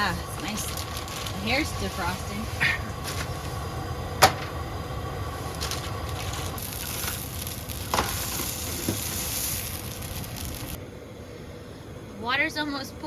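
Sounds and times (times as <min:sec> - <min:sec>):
sandwiches sizzling in frying pan: 0:00.0 - 0:03.4, 0:04.9 - 0:10.8.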